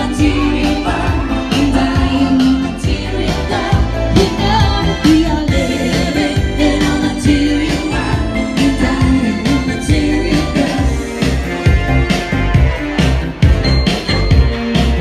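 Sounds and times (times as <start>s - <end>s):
drums: 0.0s - 15.0s
heavy bass line: 0.0s - 15.0s.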